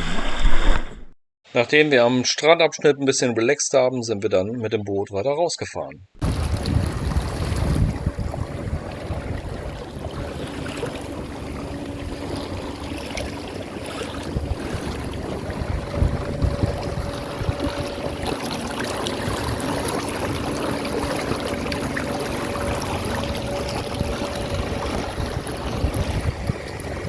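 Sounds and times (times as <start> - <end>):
boat bumps: 6.2 - 27.0
faint steady hum: 6.2 - 27.0
water rushing and splashing: 6.2 - 27.0.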